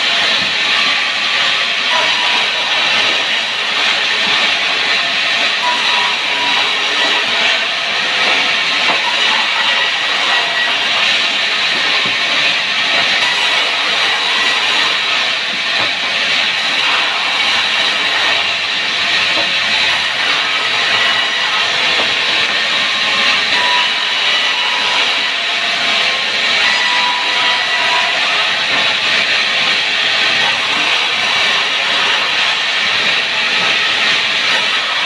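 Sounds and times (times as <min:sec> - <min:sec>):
saw cutting wood: 0:00.0 - 0:35.0.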